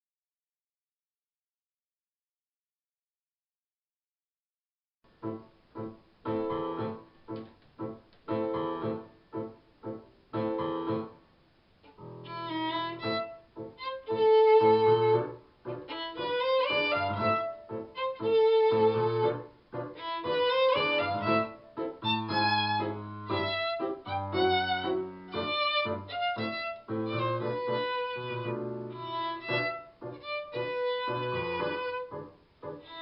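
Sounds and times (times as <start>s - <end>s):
piano chords: 5.1s - 33.0s
violin melody: 11.8s - 33.0s.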